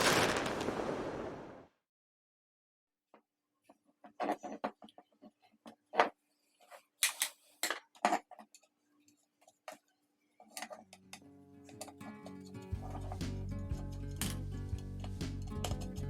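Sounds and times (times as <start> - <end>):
background music: 11.2 - 16.0.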